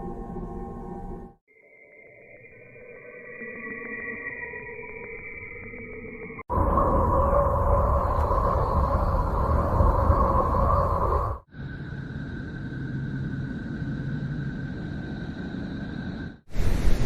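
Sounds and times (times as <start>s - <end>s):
hissing drone with high tones: 1.5s - 16.4s
deep rumbling drone: 6.4s - 16.4s.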